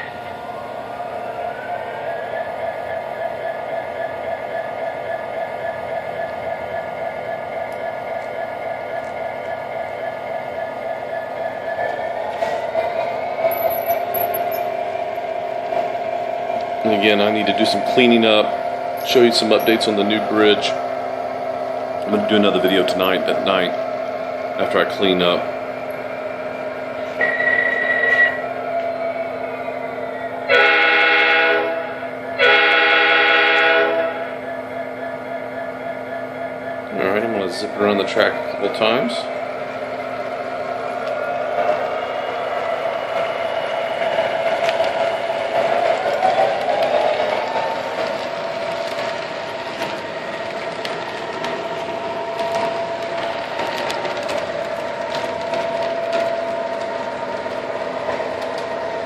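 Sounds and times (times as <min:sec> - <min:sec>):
wheels clicking on rails: 0:00.0 - 0:20.8, 0:22.0 - 0:23.9, 0:27.0 - 0:59.0
model locomotive motor whine: 0:27.0 - 0:59.0
brief high tone: 0:27.2 - 0:28.4
model locomotive air horn: 0:27.2 - 0:28.4, 0:30.5 - 0:34.3.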